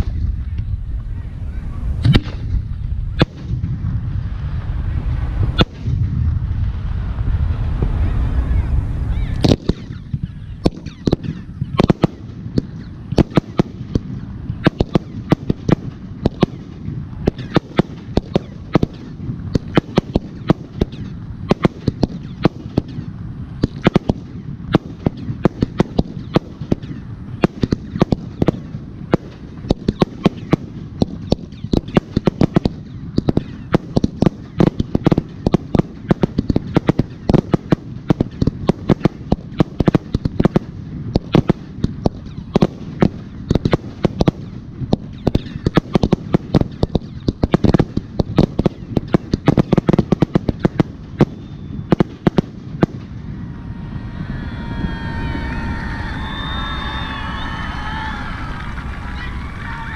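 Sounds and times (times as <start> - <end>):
fireworks bangs and pops: 0.0 - 0.7, 2.0 - 4.2, 5.5 - 6.8, 9.4 - 53.3
low rumble: 0.0 - 45.1, 50.9 - 59.9.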